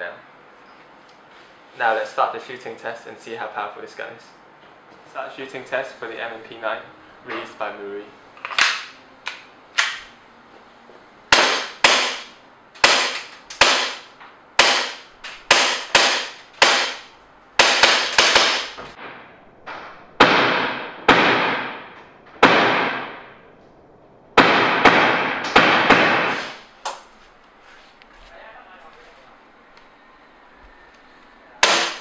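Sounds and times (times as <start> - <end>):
airsoft pistol shots: 11.3 - 23.4, 24.4 - 26.6, 31.6 - 32.0.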